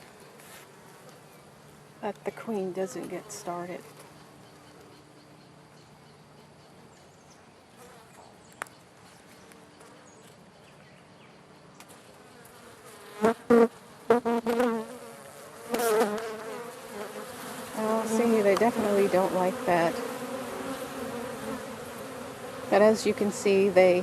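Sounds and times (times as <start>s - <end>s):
bees buzzing: 12.2s - 24.0s.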